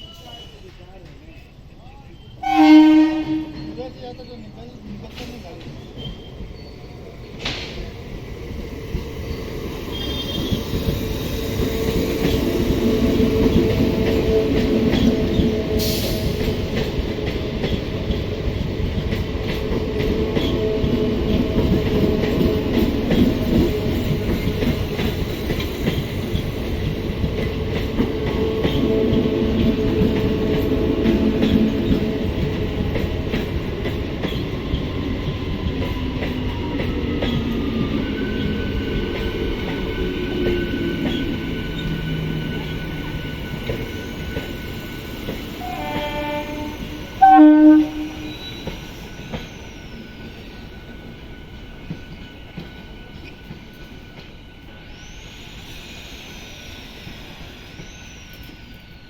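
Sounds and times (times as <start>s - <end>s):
train running past: 0.0s - 59.0s
train horn blast: 2.4s - 3.8s, 45.6s - 48.8s.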